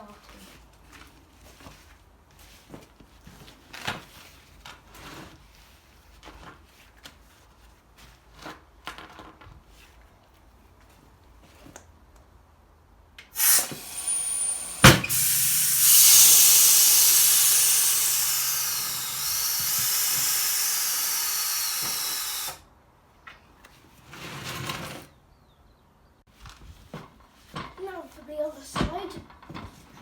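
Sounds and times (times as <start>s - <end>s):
compressed air hissing: 13.4s - 22.6s.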